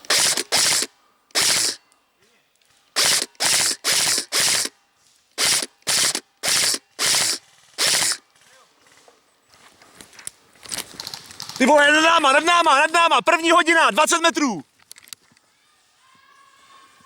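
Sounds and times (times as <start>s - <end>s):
airsoft gun automatic bursts: 0.0s - 1.8s, 3.0s - 4.7s, 5.4s - 8.6s.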